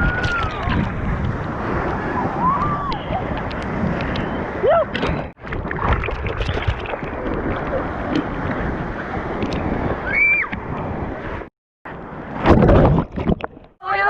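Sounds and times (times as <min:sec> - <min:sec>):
rushing splashing water: 0:00.0 - 0:11.3
wind buffeting microphone: 0:00.0 - 0:11.5.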